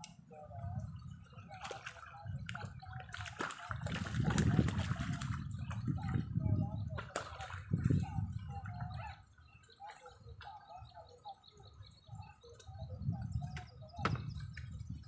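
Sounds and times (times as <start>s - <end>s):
birds chirping: 0.0s - 15.0s
wind rumbling on microphone: 0.0s - 15.0s.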